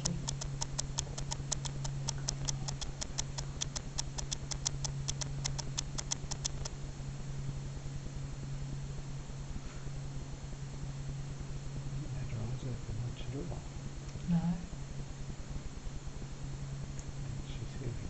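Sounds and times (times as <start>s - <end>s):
rapid sharp clicks: 0.0s - 6.8s
steady low hum: 0.0s - 18.0s.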